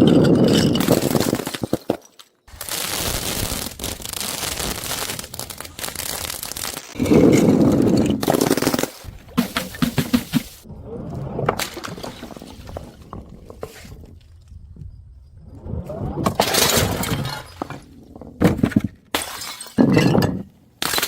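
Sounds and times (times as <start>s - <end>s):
objects being crushed crunching: 0.0s - 10.6s.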